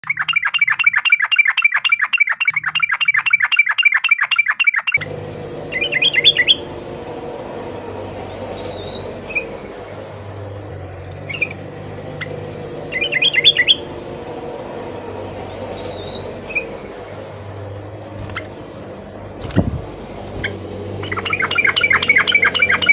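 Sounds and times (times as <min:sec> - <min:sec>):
steady low hum: 0:16.3 - 0:22.5
bird chattering calls: 0:18.2 - 0:18.6, 0:19.4 - 0:22.9.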